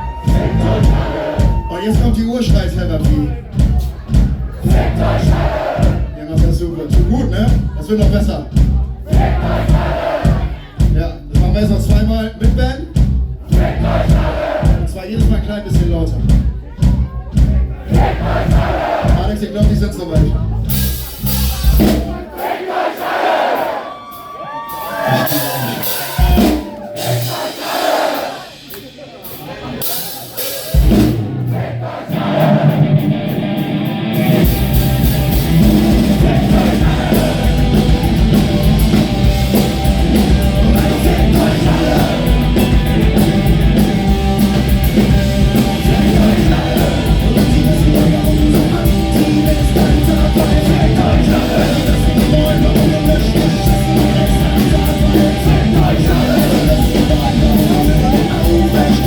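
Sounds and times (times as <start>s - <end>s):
punk rock band playing live: 0.0s - 22.4s, 23.9s - 59.0s
person singing: 39.5s - 44.1s, 44.9s - 59.0s.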